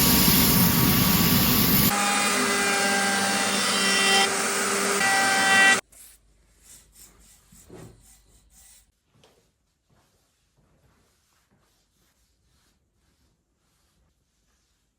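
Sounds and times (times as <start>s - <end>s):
power woodworking tool on wood: 0.0s - 5.8s.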